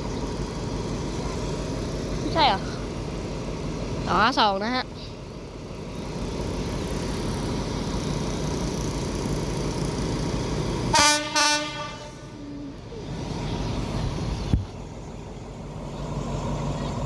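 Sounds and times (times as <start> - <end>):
train rumbling: 0.0 - 17.0
locomotive horn blasts: 10.9 - 12.4.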